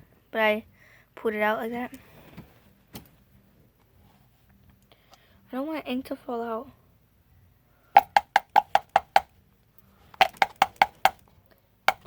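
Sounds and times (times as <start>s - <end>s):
plastic pen tapping hard surface: 8.0s - 9.3s, 10.2s - 11.2s.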